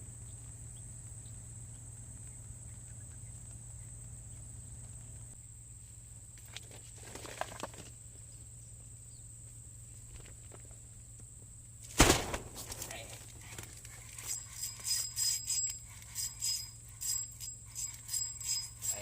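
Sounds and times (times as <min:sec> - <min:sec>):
sharp knock: 0:12.0 - 0:12.8
high-pitched insect drone: 0:12.9 - 0:19.0
light metallic jingling: 0:13.9 - 0:19.0.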